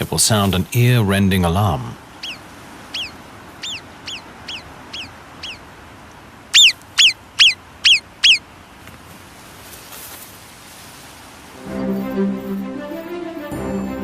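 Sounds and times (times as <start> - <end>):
marmot alarm whistles: 2.2 - 5.6, 6.5 - 8.4.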